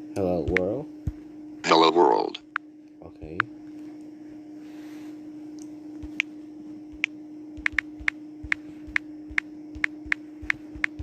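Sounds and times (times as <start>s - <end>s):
steady hum: 0.0s - 11.0s
phone keyboard tap clicks: 7.0s - 11.0s.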